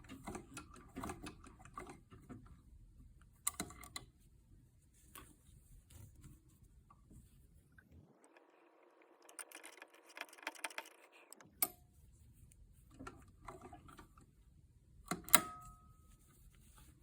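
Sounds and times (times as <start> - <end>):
small clicks and taps of handling: 0.0 - 4.2, 5.0 - 7.9.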